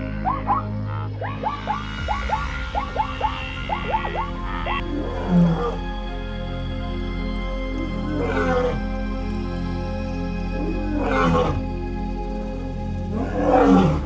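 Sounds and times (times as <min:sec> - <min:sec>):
lion roaring: 0:00.0 - 0:06.2, 0:07.7 - 0:08.9, 0:10.6 - 0:11.8, 0:13.1 - 0:14.0
ambient music: 0:00.0 - 0:14.0.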